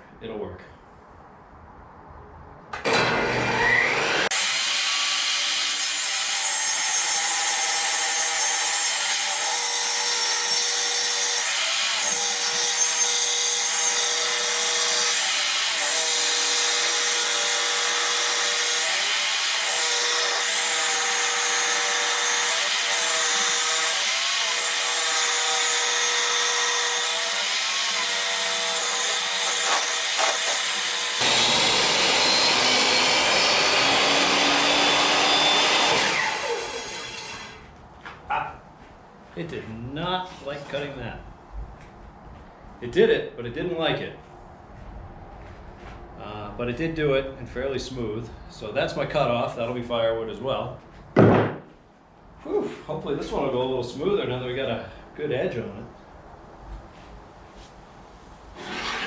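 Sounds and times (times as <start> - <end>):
table saw ripping a board: 2.8 - 37.6, 58.5 - 59.0.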